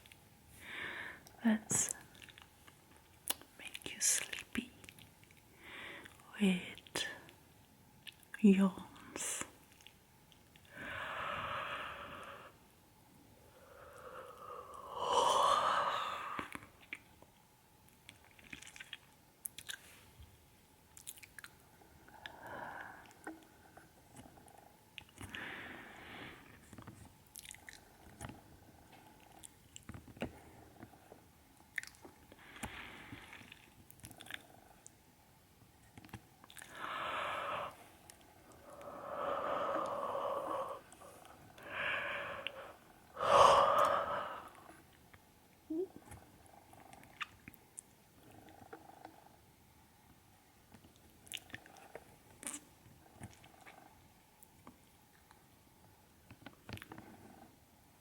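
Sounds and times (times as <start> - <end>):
soft breath: 0.5 - 1.4, 5.5 - 6.2, 10.7 - 16.8, 25.2 - 26.7, 36.6 - 44.9
wet lip and tongue clicks: 18.0 - 19.9, 21.0 - 21.6, 27.3 - 28.4, 31.7 - 32.1.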